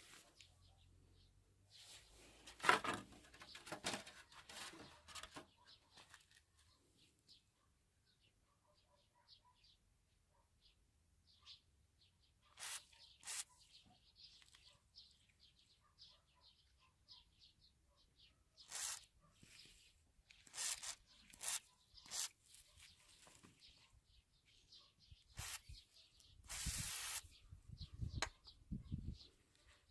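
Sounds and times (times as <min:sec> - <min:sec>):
birds chirping: 0:10.6 - 0:29.9.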